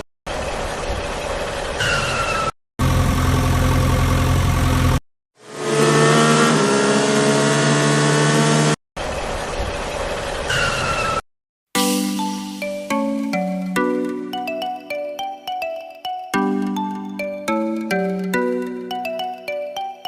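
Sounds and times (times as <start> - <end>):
low engine hum: 2.8 - 5.0
engine revving up: 2.8 - 8.8
noisy engine running: 2.8 - 10.5.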